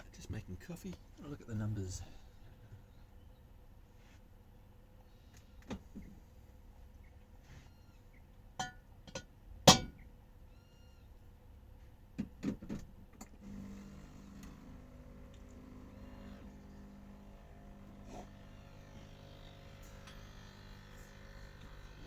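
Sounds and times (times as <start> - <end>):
low steady hum: 13.2 - 22.0.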